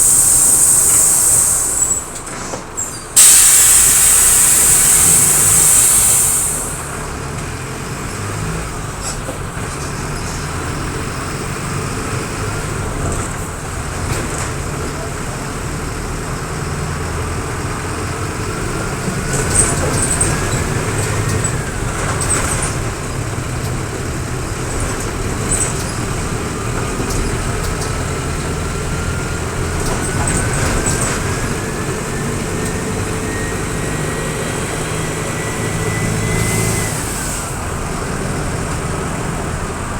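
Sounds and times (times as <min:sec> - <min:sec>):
loud hiss of air: 0:00.0 - 0:07.2, 0:33.8 - 0:37.9
bus diesel engine whining: 0:00.0 - 0:39.9.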